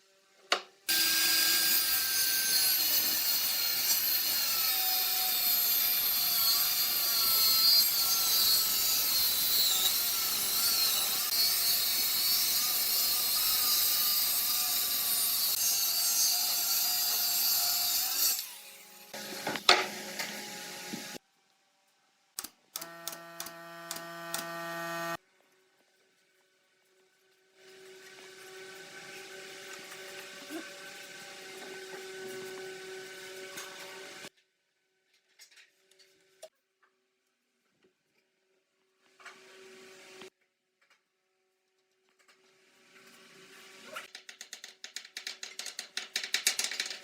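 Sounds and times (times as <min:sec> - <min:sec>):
power tool grinding wood: 0:00.9 - 0:21.2, 0:22.8 - 0:25.2
sharp click: 0:22.4 - 0:24.5.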